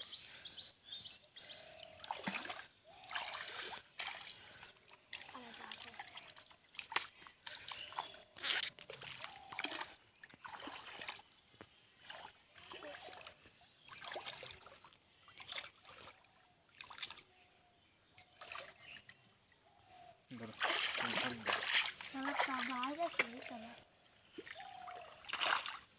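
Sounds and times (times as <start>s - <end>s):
hands splashing in water: 2.0s - 11.2s, 20.4s - 23.5s, 24.4s - 25.9s.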